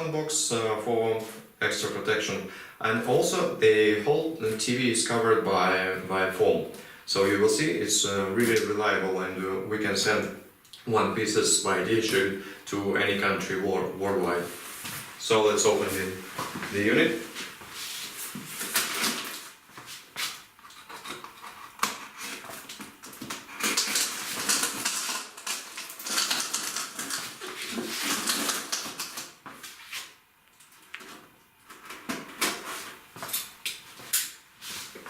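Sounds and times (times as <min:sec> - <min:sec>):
cardboard scraping and tearing: 0:20.7 - 0:29.2.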